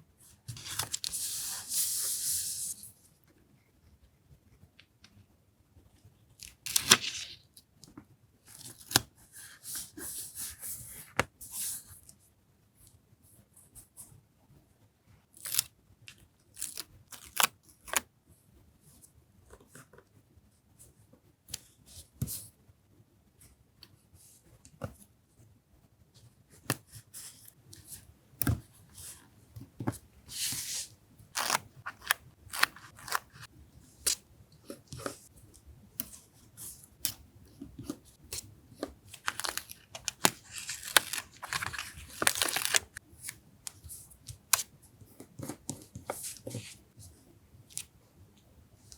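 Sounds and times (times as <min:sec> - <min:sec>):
paper rustling and tearing: 0:39.1 - 0:43.0.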